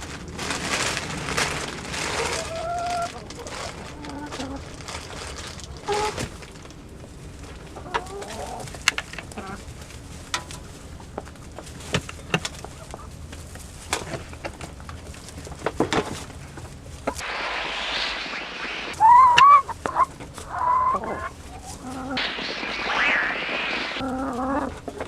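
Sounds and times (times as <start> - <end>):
chickens clucking: 2.2 - 4.7, 7.7 - 9.7, 19.0 - 24.9.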